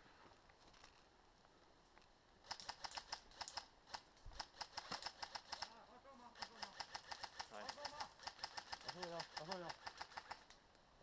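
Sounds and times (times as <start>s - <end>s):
quick sharp clicks: 2.4s - 5.8s, 6.4s - 10.6s.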